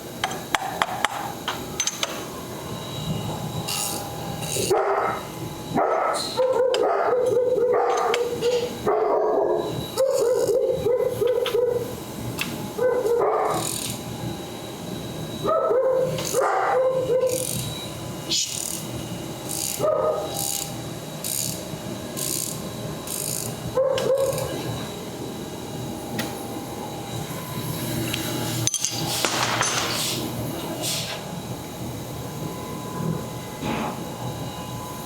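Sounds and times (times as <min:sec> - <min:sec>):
dog whining and yipping: 0:05.8 - 0:11.9.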